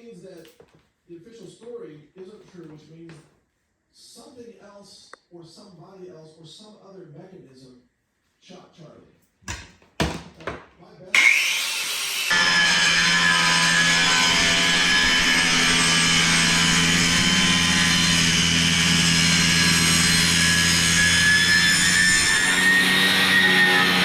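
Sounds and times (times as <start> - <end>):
power saw cutting: 11.2 - 24.0.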